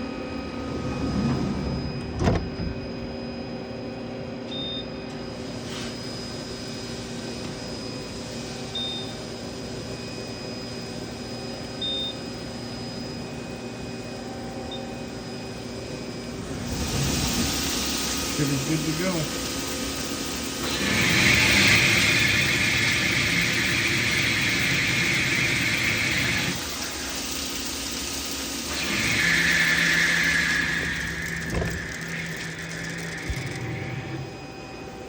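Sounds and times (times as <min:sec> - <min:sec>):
cnc machine humming: 0:12.3 - 0:35.0.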